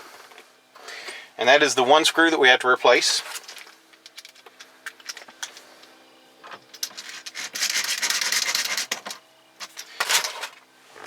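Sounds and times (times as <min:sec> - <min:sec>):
screw grating into plastic: 0:07.1 - 0:09.0.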